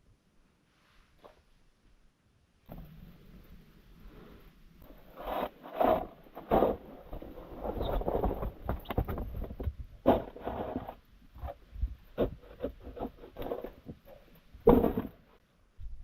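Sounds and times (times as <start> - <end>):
scraping and rustling: 4.8 - 15.4.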